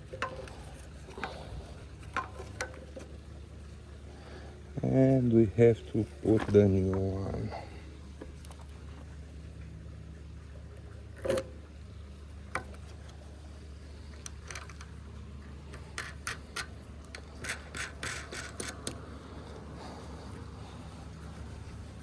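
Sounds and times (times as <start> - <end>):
air filter scraping in housing: 0.0 - 3.2, 14.6 - 22.0.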